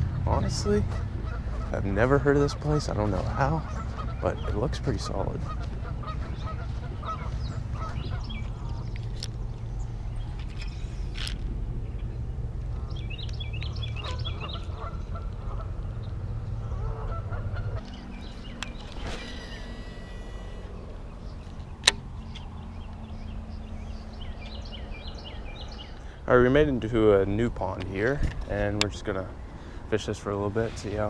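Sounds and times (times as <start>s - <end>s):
geese honking: 0.0s - 9.0s, 13.8s - 15.9s, 16.5s - 22.3s
low steady rumble: 0.0s - 31.0s.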